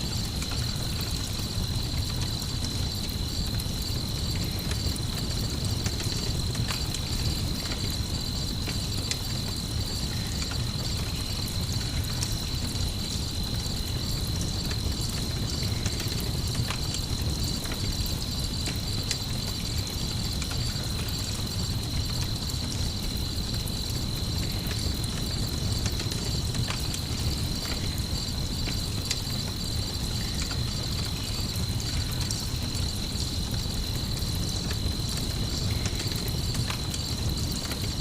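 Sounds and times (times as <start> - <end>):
crickets chirping: 0.0 - 38.0
campfire crackling and popping: 0.1 - 38.0.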